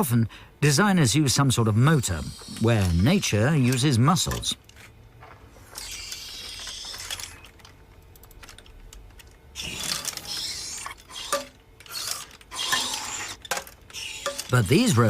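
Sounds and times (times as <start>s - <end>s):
robot clicking and whirring: 2.1s - 4.6s, 5.6s - 15.0s.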